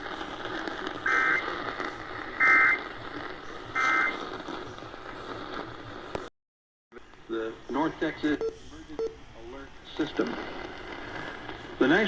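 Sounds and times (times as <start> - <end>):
radio hiss: 0.0 - 6.3, 6.9 - 12.0
digital data tone bursts: 1.1 - 1.5, 2.4 - 2.9, 3.8 - 4.2.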